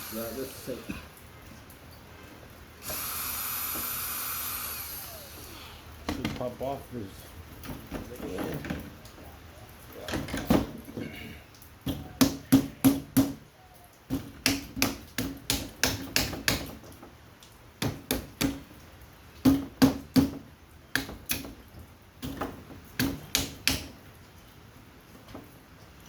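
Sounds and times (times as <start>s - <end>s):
sharp knocks on plastic parts: 11.8s - 13.4s, 14.1s - 16.9s, 17.8s - 18.7s, 19.4s - 21.6s, 22.2s - 24.0s.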